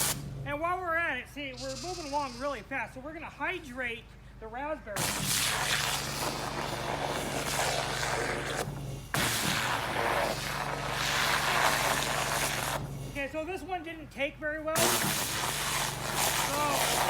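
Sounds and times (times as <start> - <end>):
pressure washer jet blasting soil: 0.0 - 0.3, 5.0 - 13.4, 14.8 - 17.0
pressure washer humming: 0.0 - 0.5, 5.0 - 13.6, 14.8 - 17.0.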